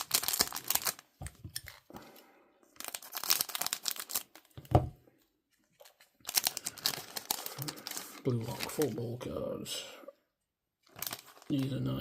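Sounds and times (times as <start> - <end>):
wrapper tearing and crinkling: 0.0 - 1.9, 2.8 - 4.6, 5.8 - 9.0, 10.8 - 12.0.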